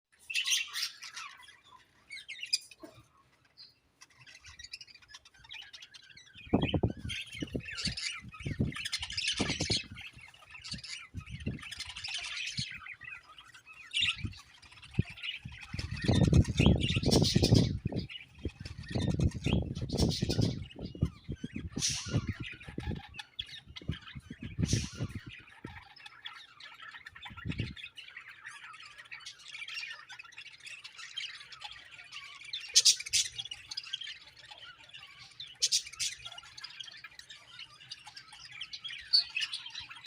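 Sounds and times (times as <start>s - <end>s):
budgerigars chirping and chattering: 0.1s - 40.0s.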